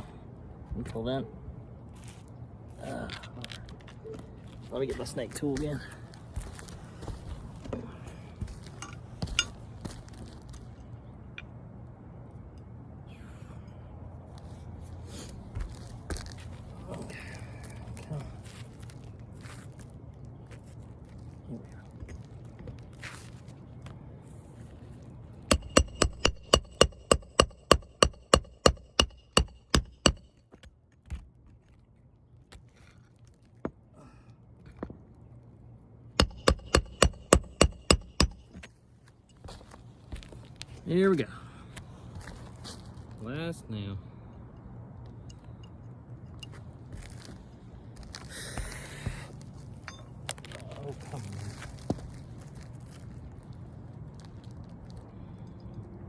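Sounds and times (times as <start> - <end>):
hammer striking nail: 25.5 - 30.3, 36.2 - 38.6.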